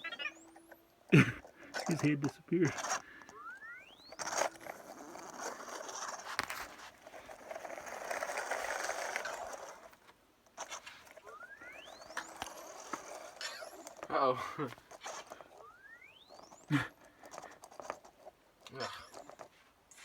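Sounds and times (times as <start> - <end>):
thin rising chirp: 0.0 - 6.3, 10.8 - 18.0
toy robot rolling on floor: 0.0 - 20.0.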